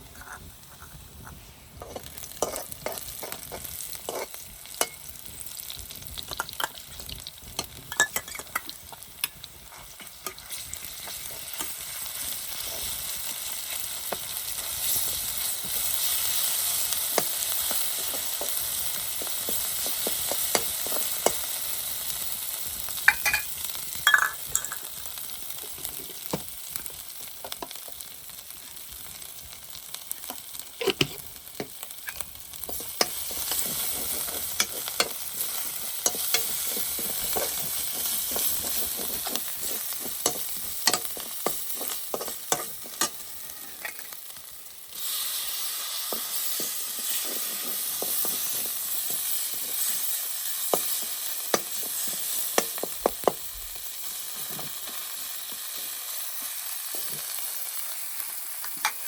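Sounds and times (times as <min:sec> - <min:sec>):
food sizzling in a pan: 0:00.0 - 0:59.0
utensil scraping a pan: 0:00.1 - 0:05.0, 0:32.0 - 0:44.2, 0:45.0 - 0:50.0.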